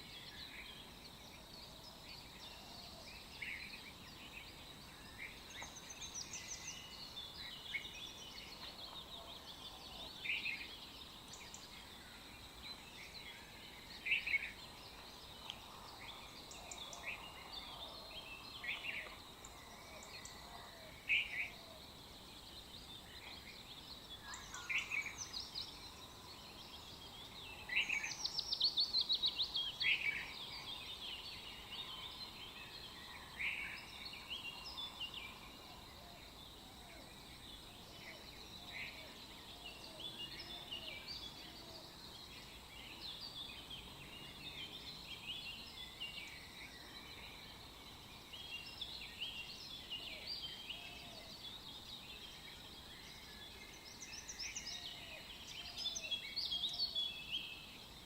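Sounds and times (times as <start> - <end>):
faint steady hiss: 0.0 - 58.0
birds chirping and calling: 48.4 - 51.6.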